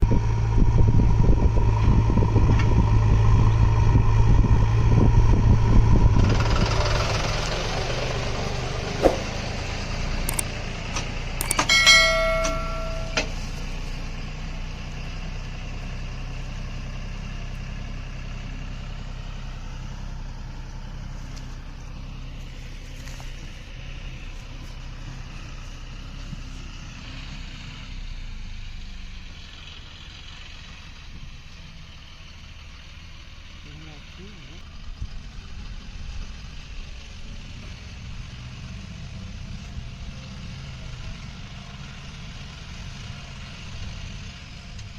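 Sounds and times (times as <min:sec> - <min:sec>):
diesel engine running: 0:00.0 - 0:44.9
short high-pitched tone: 0:11.4 - 0:13.4.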